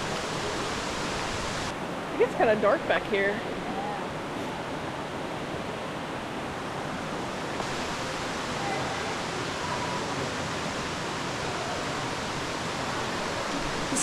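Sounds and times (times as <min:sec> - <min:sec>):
waterfall rushing: 0:00.0 - 0:02.6, 0:07.1 - 0:14.0.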